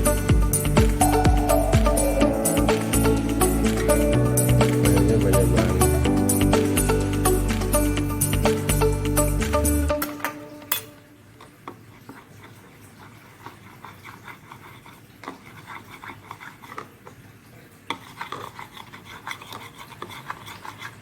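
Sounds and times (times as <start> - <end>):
light rubbing and scraping: 11.7 - 17.2, 17.9 - 21.0.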